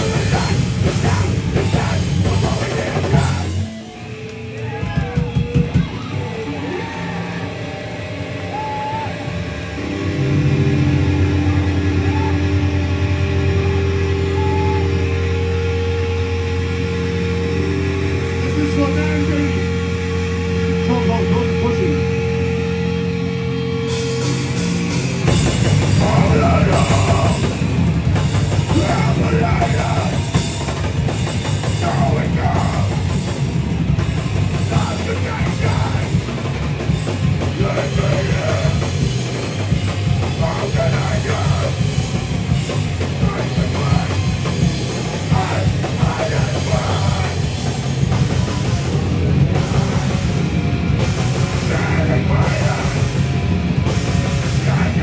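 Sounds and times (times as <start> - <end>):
heavy metal band playing live: 0.0 - 55.0
held guitar note ringing: 9.6 - 26.0.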